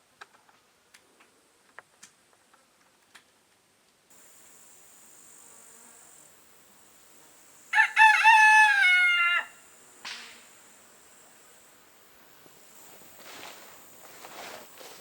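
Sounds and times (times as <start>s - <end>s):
rooster crowing: 7.7s - 9.6s.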